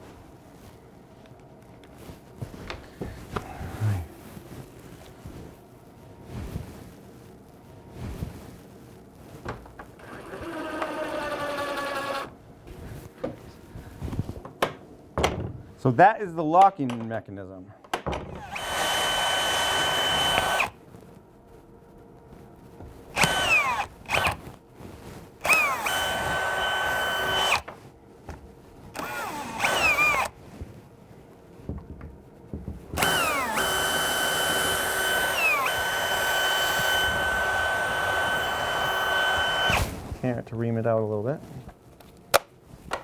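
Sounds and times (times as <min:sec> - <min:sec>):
power drill whining: 0:10.0 - 0:12.3, 0:18.4 - 0:20.8, 0:23.2 - 0:24.4, 0:25.4 - 0:27.8, 0:29.0 - 0:30.4, 0:33.0 - 0:40.0.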